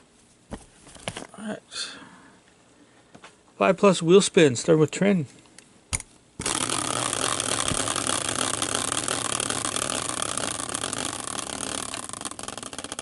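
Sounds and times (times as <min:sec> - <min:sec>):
prize wheel pointer ticking: 0:06.4 - 0:13.0.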